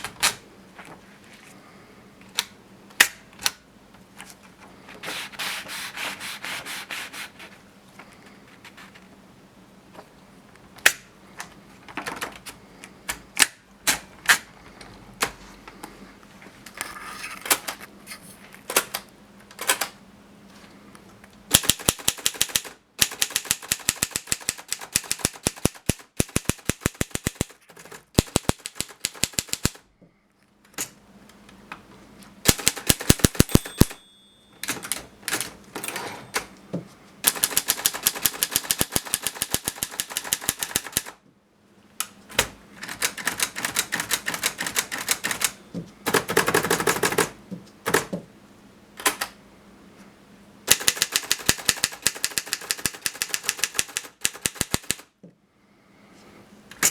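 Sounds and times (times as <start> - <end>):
manual typewriter typing: 18.7 - 20.0, 21.5 - 29.8, 32.5 - 36.5, 37.2 - 41.2, 42.3 - 48.2, 50.7 - 55.1
typewriter margin bell ringing: 32.6 - 36.4.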